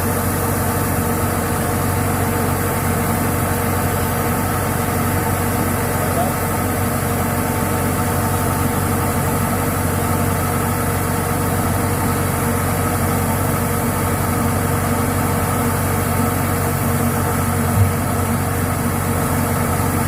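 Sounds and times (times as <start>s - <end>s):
diesel engine running steadily: 0.0s - 20.0s.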